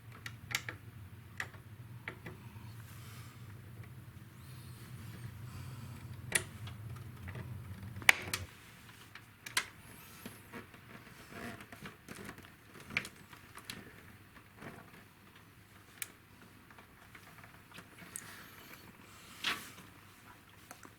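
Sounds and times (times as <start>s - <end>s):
low hum: 0.8s - 8.5s.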